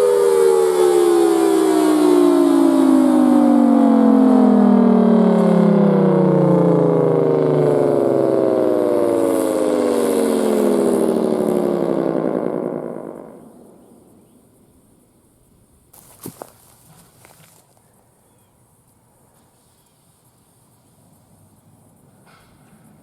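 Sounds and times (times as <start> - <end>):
tornado siren winding down: 0.0 - 14.3.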